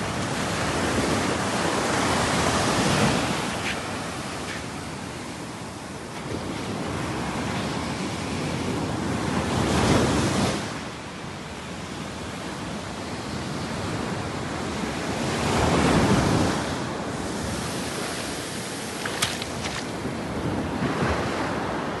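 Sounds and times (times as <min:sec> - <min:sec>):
waves breaking: 0:15.6 - 0:21.8.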